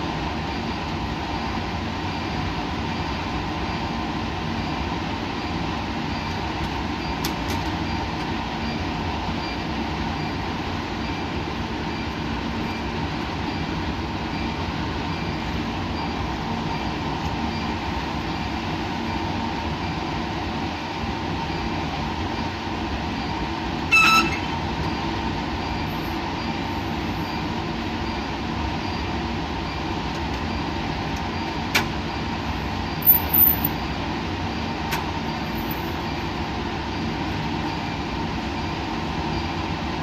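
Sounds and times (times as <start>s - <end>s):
short high beep: 33.0s - 33.7s.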